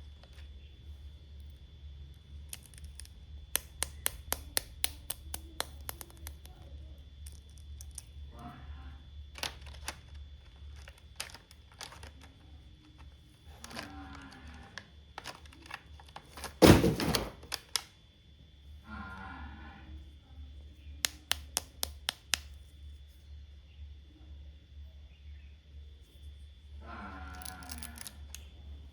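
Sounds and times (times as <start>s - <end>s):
plastic toy pieces clicking: 2.4s - 8.1s, 9.4s - 17.9s, 21.0s - 22.6s, 27.3s - 28.5s
thump with rustle: 16.4s - 17.6s.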